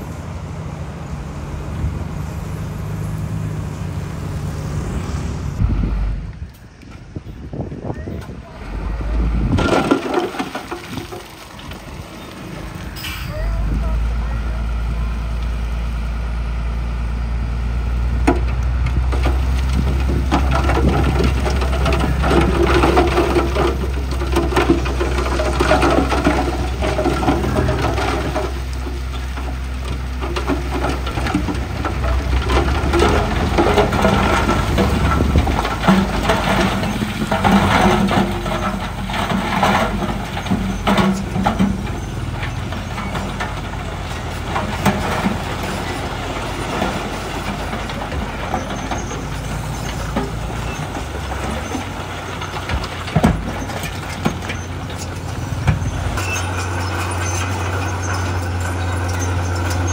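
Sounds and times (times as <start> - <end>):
heavy diesel machinery running: 8.3 - 59.9
rock knocking and clattering: 9.5 - 12.0, 18.2 - 59.9.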